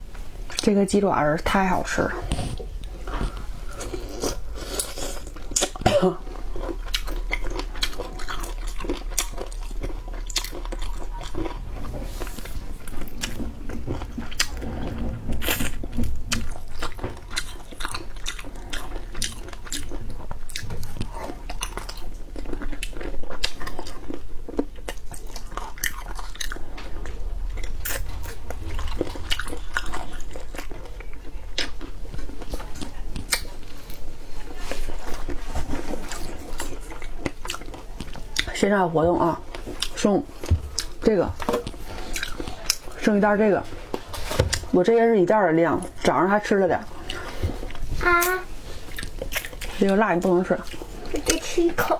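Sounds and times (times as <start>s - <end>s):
person biting and chewing food: 2.3s - 34.1s, 46.9s - 49.8s.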